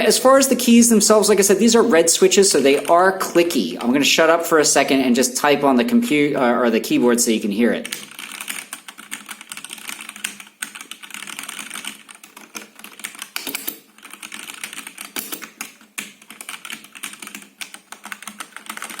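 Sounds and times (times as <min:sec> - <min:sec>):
mechanical keyboard typing: 0:02.1 - 0:03.6, 0:07.8 - 0:19.0.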